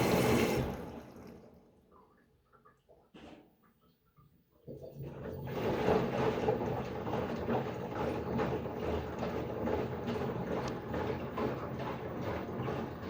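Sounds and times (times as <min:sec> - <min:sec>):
washing machine churning: 0:00.0 - 0:01.7, 0:04.7 - 0:13.0.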